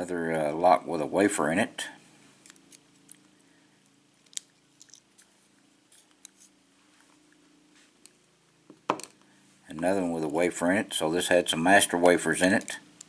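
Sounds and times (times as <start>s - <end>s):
faint low hum: 0.0s - 13.0s
metallic clicks of lock parts: 4.2s - 5.0s.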